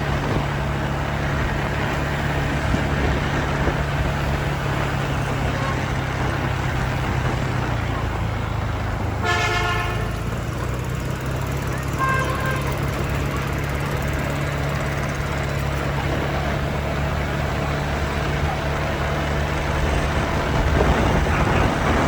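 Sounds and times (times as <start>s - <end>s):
motor vehicle running hum: 0.0s - 22.0s
vehicle horn honking: 5.4s - 6.1s, 9.2s - 10.4s, 11.5s - 13.4s.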